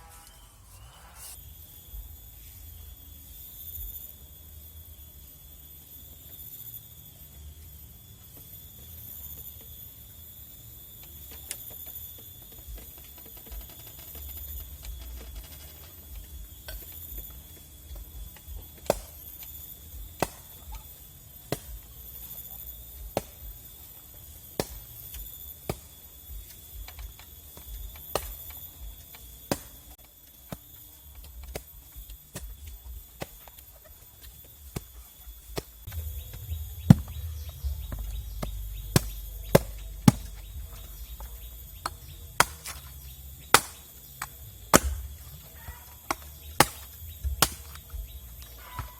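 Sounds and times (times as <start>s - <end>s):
blade chopping strokes: 35.6s - 45.4s, 46.0s - 48.0s.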